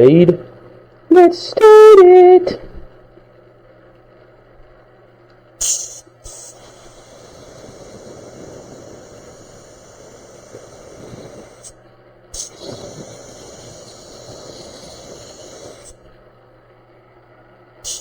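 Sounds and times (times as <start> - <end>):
spray gun hissing: 5.6 - 11.8, 12.4 - 16.1
sharp blast of air: 5.6 - 16.1.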